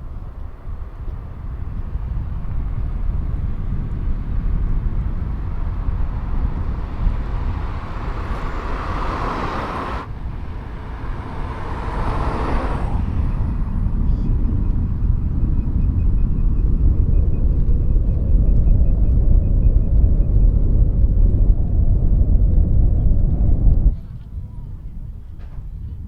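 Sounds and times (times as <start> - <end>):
road noise: 0.0 - 26.0
wind rumbling on microphone: 0.0 - 26.0
rushing noise: 4.8 - 14.9.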